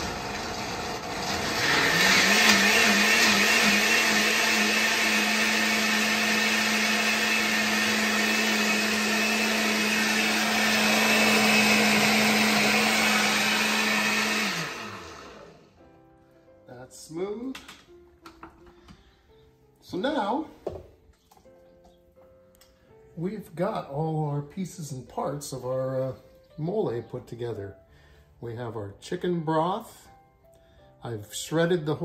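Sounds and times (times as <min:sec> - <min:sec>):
blender running: 0:00.0 - 0:15.7.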